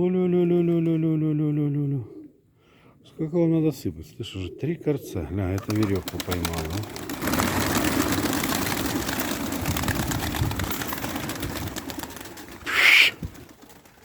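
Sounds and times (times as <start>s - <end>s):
pigeons cooing: 1.6s - 2.5s, 4.0s - 9.5s, 11.8s - 13.7s
pigeons pecking grain: 5.6s - 14.0s.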